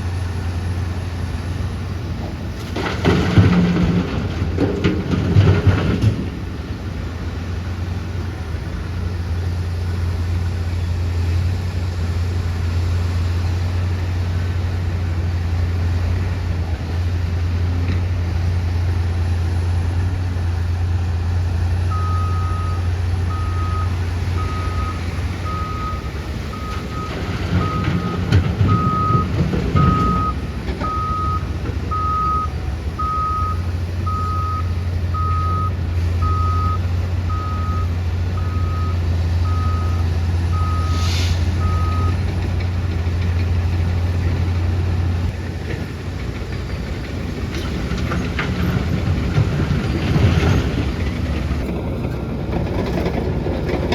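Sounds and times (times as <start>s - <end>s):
heavy diesel engine running: 0.0s - 53.9s
reversing alarm beeping: 21.9s - 42.3s.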